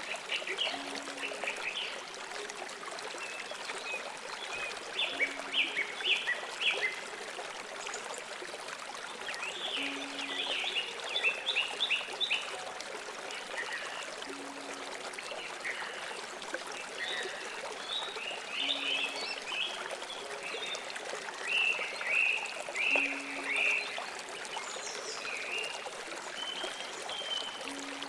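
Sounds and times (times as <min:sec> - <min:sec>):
river water running: 0:00.0 - 0:28.0
birds chirping: 0:16.9 - 0:25.7.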